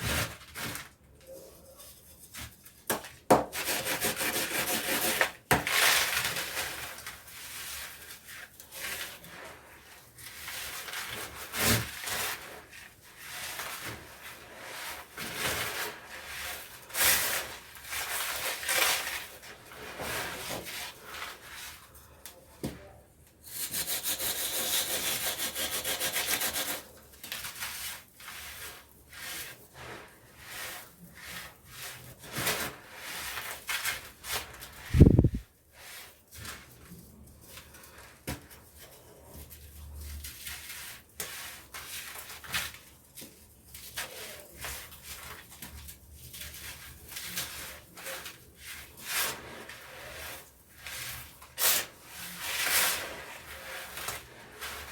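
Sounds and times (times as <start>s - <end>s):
continuous grating rub: 23.5s - 42.6s, 46.2s - 54.9s.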